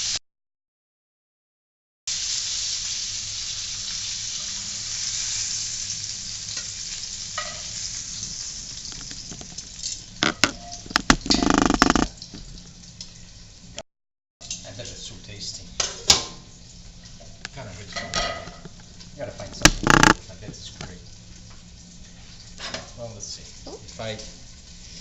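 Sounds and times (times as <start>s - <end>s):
food sizzling in frying pan: 0.0s - 0.2s, 2.1s - 13.8s, 14.4s - 25.0s
sharp knocks: 10.2s - 12.1s, 19.6s - 20.2s.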